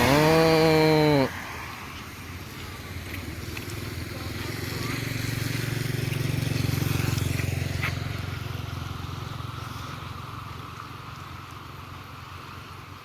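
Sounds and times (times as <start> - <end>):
vehicle engine passing by: 0.0 - 12.8
rain hissing: 0.6 - 8.3.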